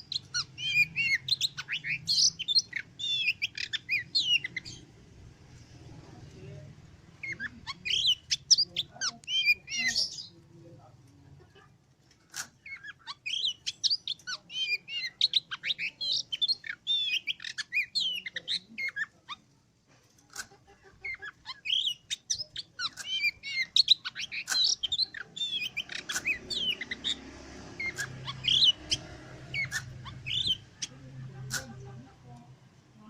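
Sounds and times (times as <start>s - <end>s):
songbird whistling and trilling: 0.0s - 4.8s, 12.7s - 19.0s, 21.5s - 27.2s, 27.8s - 31.0s.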